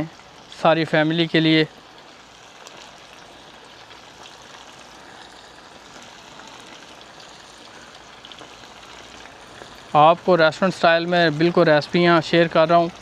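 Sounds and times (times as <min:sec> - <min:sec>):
chicken deep-frying in oil: 0:00.0 - 0:13.0
faint crackles: 0:01.8 - 0:11.6.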